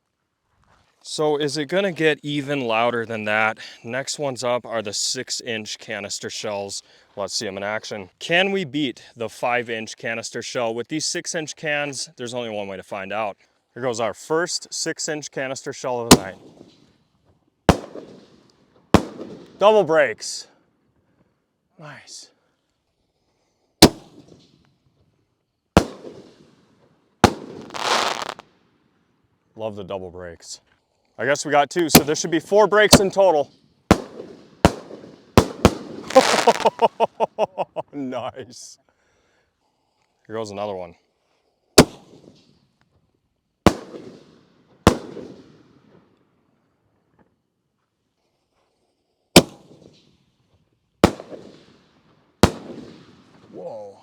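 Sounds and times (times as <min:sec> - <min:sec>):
firework shells bursting: 0:17.7 - 0:19.7, 0:25.8 - 0:26.6, 0:27.2 - 0:28.5, 0:32.0 - 0:37.0, 0:43.7 - 0:45.7, 0:51.0 - 0:53.5
hissing burst effect: 0:36.1 - 0:37.1.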